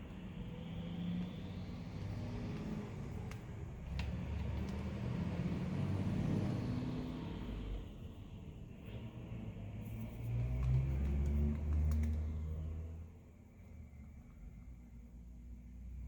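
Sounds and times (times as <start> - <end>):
faint clicks: 10.6 - 12.3.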